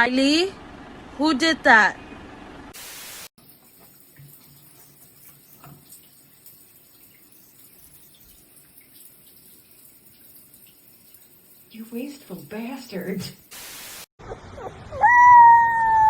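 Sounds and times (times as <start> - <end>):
water tap running: 2.8 - 14.1
water splashes and drips: 3.3 - 14.1
burst of hiss: 13.5 - 14.1.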